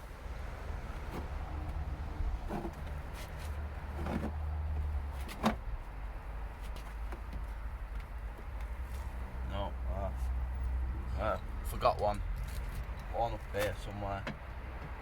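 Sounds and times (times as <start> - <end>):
knocks and scrapes: 1.0 - 4.4.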